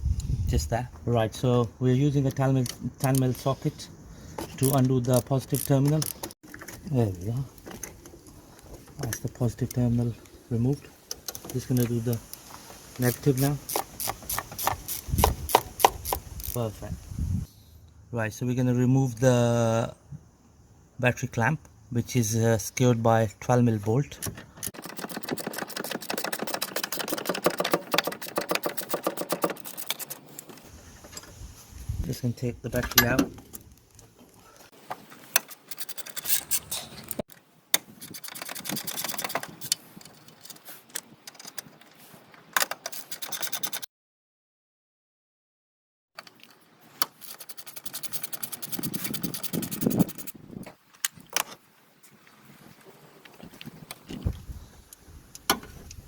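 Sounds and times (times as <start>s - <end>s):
socket ratchet clicking: 13.1s - 16.6s
socket ratchet clicking rapidly: 13.1s - 16.6s, 24.7s - 30.2s, 47.4s - 50.3s.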